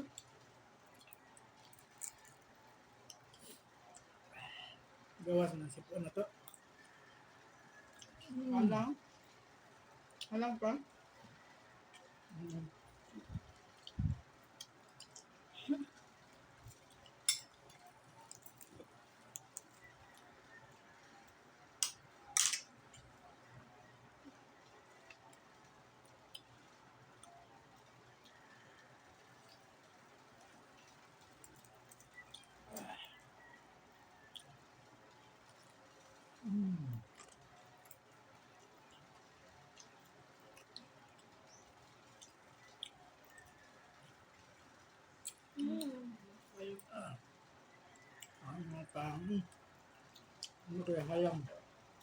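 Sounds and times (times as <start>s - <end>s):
faint eating clicks: 0.0s - 4.3s, 9.0s - 52.0s
person chewing food: 11.3s - 22.1s, 49.4s - 52.0s
low voice hum: 12.3s - 14.2s, 36.4s - 37.2s, 45.6s - 47.2s.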